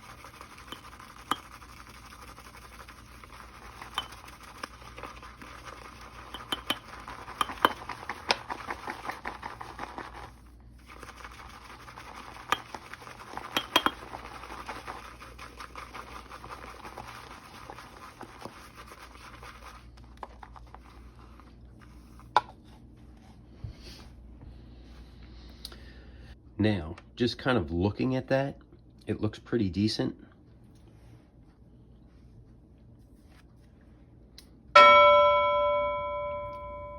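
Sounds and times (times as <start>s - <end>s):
brush swishing lather: 0.0s - 23.4s
brush clicking against bowl: 0.4s - 1.6s, 3.7s - 5.2s, 6.2s - 9.9s, 12.4s - 14.4s.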